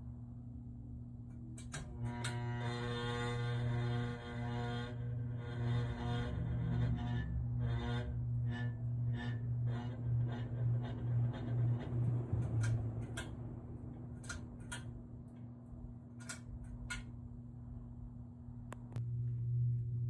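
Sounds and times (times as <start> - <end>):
fan motor mains hum: 0.0 - 20.0.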